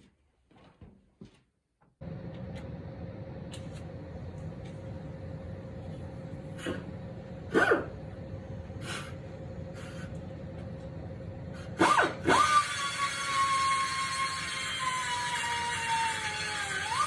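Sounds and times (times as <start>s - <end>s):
electric power tool whining: 11.6s - 17.0s.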